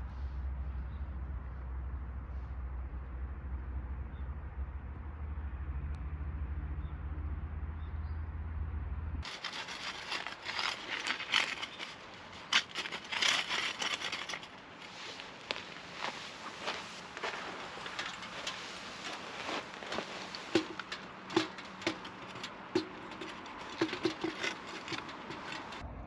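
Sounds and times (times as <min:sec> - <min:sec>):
steady low rumble: 0:00.0 - 0:09.3
scraping and rubbing: 0:09.2 - 0:25.8.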